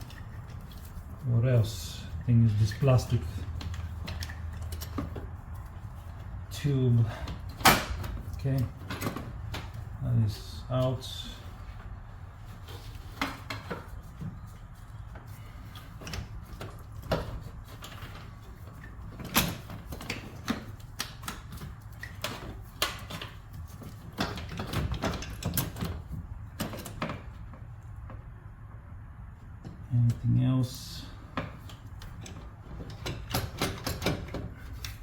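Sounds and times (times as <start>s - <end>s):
tools and engine parts clicking: 2.5s - 6.3s, 15.1s - 28.2s, 31.4s - 35.0s.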